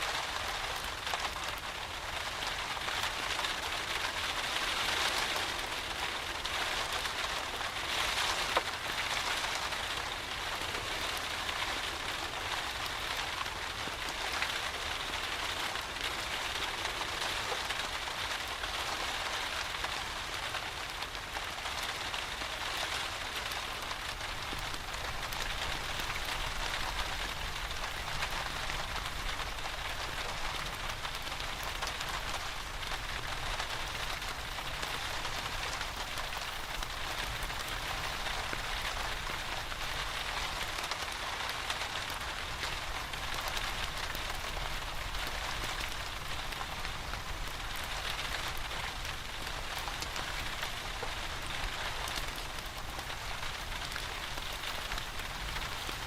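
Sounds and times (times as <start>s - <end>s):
steady rain falling: 0.0s - 56.0s
wood fire popping: 48.6s - 56.0s.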